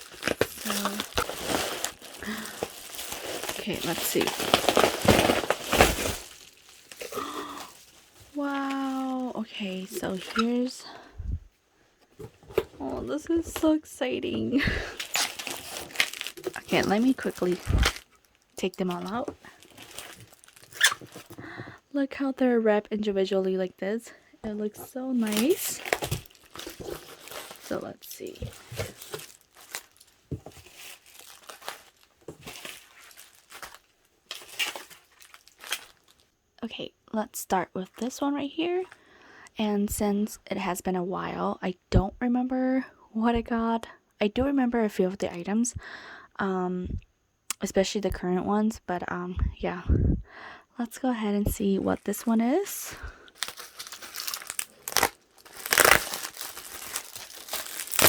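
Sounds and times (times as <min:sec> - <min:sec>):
packaging crinkling and rustling: 0:00.0 - 0:11.1, 0:12.2 - 0:21.6, 0:24.7 - 0:36.3, 0:52.2 - 0:58.0.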